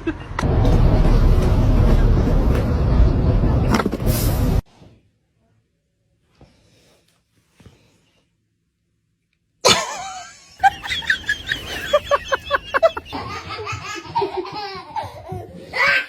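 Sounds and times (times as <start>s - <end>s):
sudden loud sound: 0.4s - 4.6s
person laughing: 9.7s - 15.6s.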